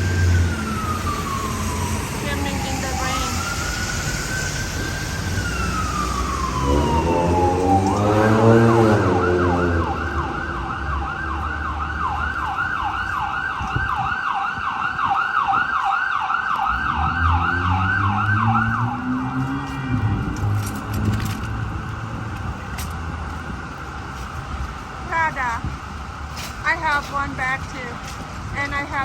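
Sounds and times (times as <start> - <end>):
deep rising and falling drone: 0.0 - 24.4
emergency siren wailing and yelping: 0.0 - 25.8.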